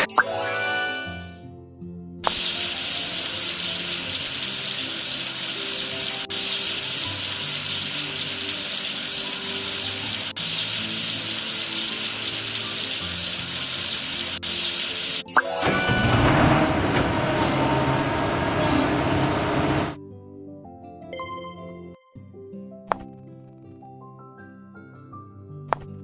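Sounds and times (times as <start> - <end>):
soft background music: 0.0 - 26.0
steady hissing: 2.3 - 15.2.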